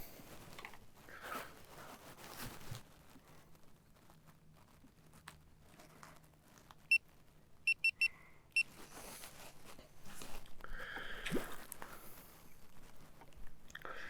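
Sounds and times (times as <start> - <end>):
rustling and handling of gear: 0.2 - 7.0, 8.6 - 10.6
short high electronic beeps: 7.7 - 8.1.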